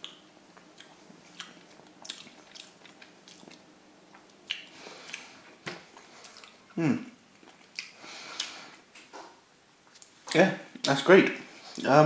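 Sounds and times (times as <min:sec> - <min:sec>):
person chewing food: 0:00.0 - 0:09.1.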